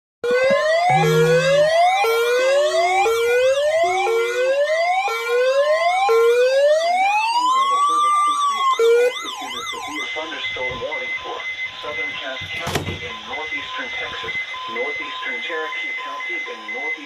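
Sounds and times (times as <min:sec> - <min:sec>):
electronic siren whoop: 0:00.2 - 0:10.1
slow siren wail: 0:00.2 - 0:12.6
fast siren yelp: 0:00.2 - 0:16.9.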